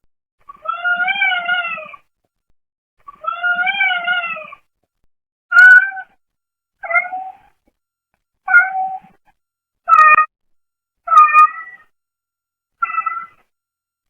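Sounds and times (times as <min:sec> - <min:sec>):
cat meowing: 0:00.6 - 0:02.0, 0:03.2 - 0:04.6, 0:05.5 - 0:06.2, 0:06.8 - 0:07.5, 0:08.5 - 0:09.2, 0:09.9 - 0:10.3, 0:11.1 - 0:11.9, 0:12.8 - 0:13.4.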